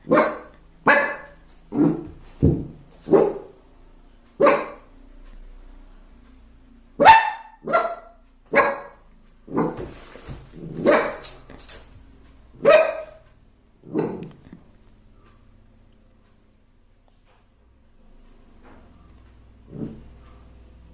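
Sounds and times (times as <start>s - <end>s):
puppy barking: 0.0s - 2.2s, 3.1s - 3.5s, 4.4s - 4.9s, 7.0s - 9.9s, 10.6s - 11.4s, 12.6s - 13.2s, 13.9s - 14.3s.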